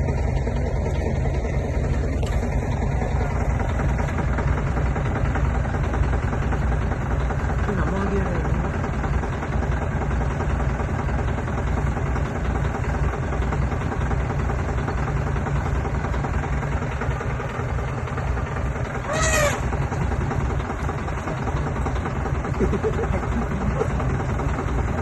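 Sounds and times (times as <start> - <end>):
jeep engine idling: 0.0 - 25.0
high animal call: 19.0 - 19.8.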